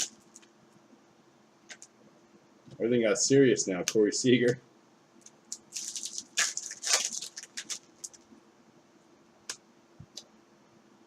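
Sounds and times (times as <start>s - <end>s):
cards rustling as flipped: 5.6s - 8.2s.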